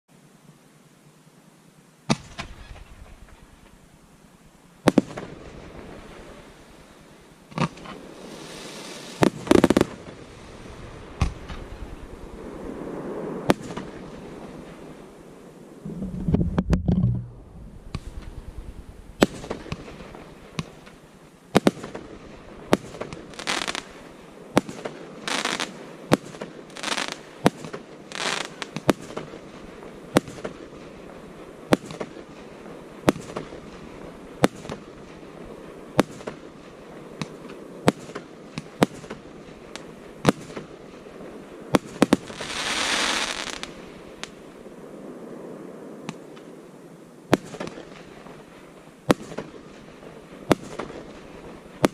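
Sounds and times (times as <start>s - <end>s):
fireworks bangs: 2.1s - 3.8s, 4.8s - 15.1s, 15.8s - 46.6s, 47.3s - 51.9s
fireworks hissing: 2.1s - 3.9s, 4.8s - 15.0s, 17.9s - 34.8s, 38.8s - 45.0s.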